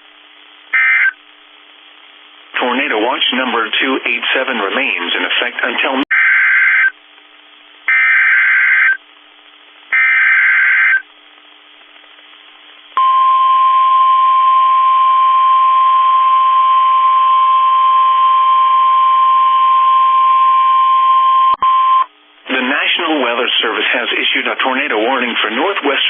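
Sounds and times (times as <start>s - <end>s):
harsh data header bursts: 0.8s - 1.2s, 7.9s - 9.0s, 9.9s - 11.0s
steady alarm tone: 0.8s - 1.2s, 6.1s - 7.0s, 7.9s - 9.0s, 9.9s - 11.0s.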